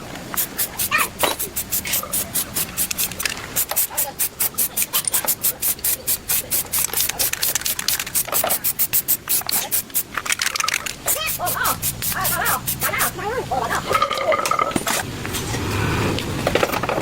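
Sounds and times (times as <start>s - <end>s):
rhythmic scrubbing strokes: 0.0s - 10.2s, 11.0s - 13.8s.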